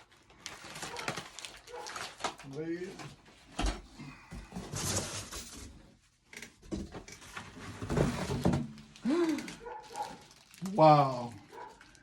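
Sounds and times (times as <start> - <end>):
rustling of wrapping: 0.0 - 3.6, 7.1 - 12.0.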